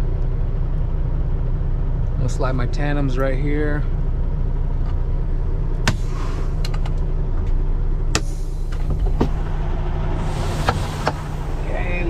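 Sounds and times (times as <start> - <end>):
diesel truck engine idling: 0.0 - 12.0
air hiss: 10.2 - 12.0.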